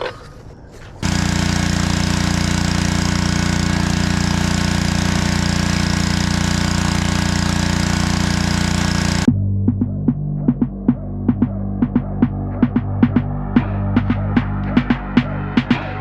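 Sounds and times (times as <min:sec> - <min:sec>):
pressure washer engine running: 0:01.0 - 0:09.3.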